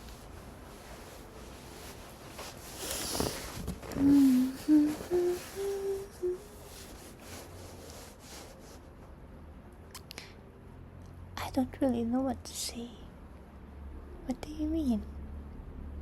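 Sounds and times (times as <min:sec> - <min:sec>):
breathy noise: 0:01.8 - 0:08.6
man humming: 0:04.0 - 0:06.4.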